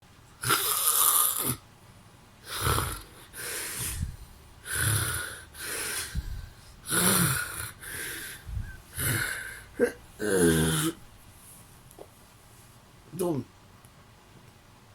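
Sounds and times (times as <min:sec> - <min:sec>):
man snoring: 0:00.4 - 0:01.6, 0:02.4 - 0:11.0
soft breath: 0:03.1 - 0:04.5, 0:05.2 - 0:09.9.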